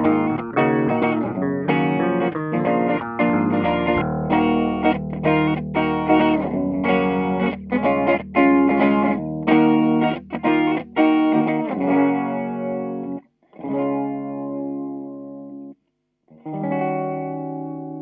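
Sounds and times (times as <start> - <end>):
rock band music: 0.0 - 11.7
electric guitar chords: 0.0 - 15.7, 16.3 - 18.0.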